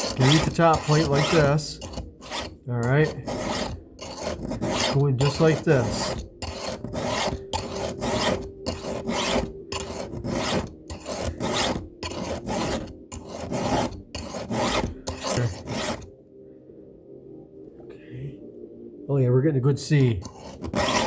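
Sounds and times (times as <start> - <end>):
file rasping on chainsaw chain: 0.0 - 16.1, 20.2 - 21.0.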